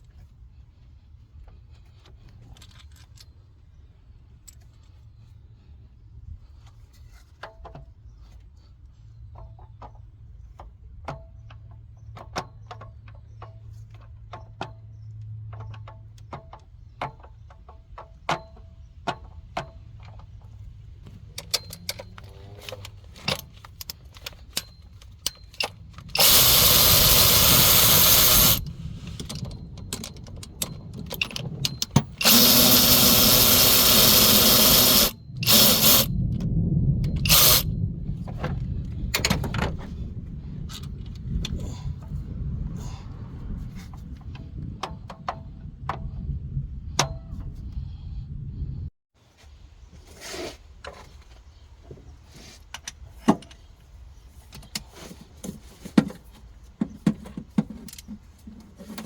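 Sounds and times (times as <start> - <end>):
power tool bursts: 26.1 - 28.7, 32.0 - 36.1, 37.2 - 37.7.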